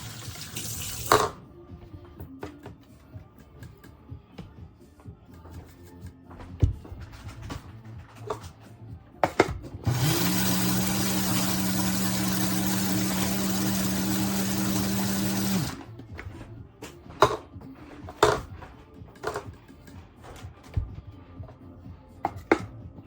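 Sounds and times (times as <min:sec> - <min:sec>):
coffee grinder motor whirring: 0:09.8 - 0:15.8.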